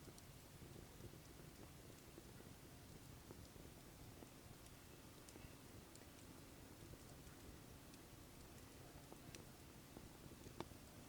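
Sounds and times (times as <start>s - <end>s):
campfire crackling: 0.0s - 11.0s
low steady hiss: 0.0s - 11.0s.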